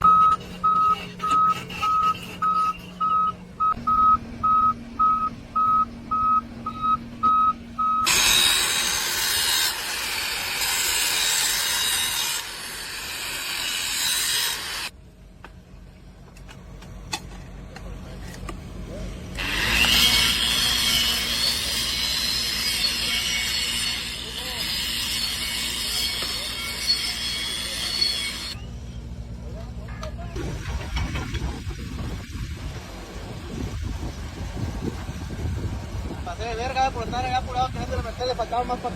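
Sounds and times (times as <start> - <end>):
short electronic beeps: 0.0 - 8.1.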